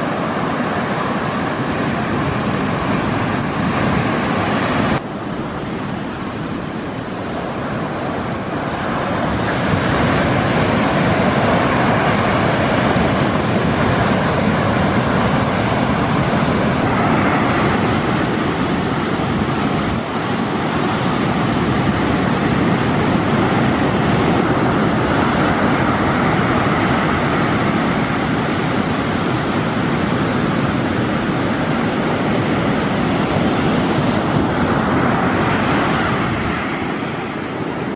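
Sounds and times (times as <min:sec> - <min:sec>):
surf breaking on beach: 0:00.0 - 0:37.9.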